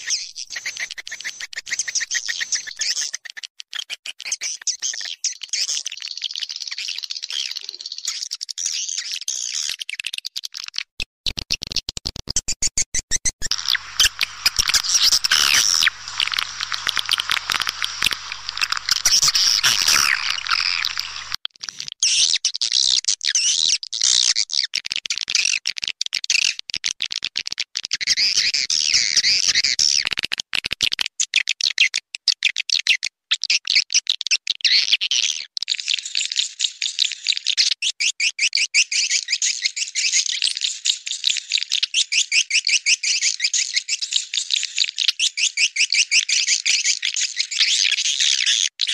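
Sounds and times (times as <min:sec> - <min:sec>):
swiftlets twittering: 0:13.5 - 0:21.4.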